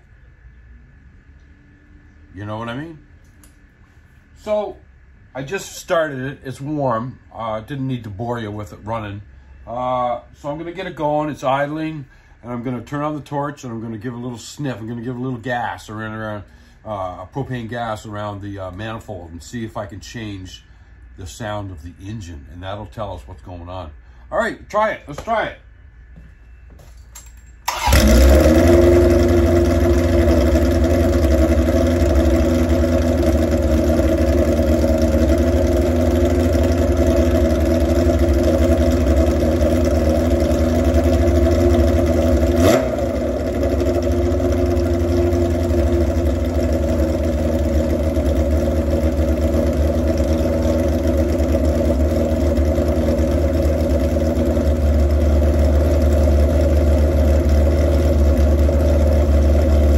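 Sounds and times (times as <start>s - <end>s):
motorcycle engine idling: 27.7s - 59.9s.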